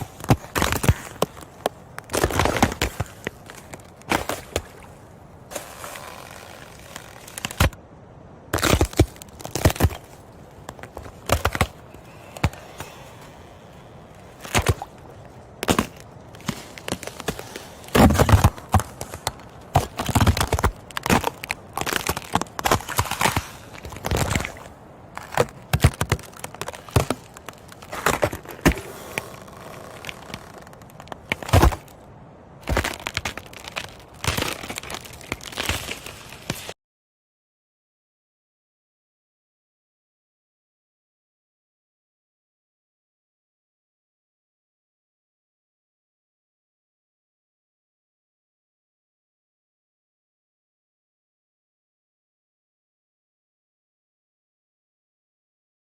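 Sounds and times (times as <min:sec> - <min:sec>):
ice cracking and breaking: 0:00.0 - 0:04.9, 0:05.5 - 0:07.8, 0:08.6 - 0:31.9, 0:32.6 - 0:36.8.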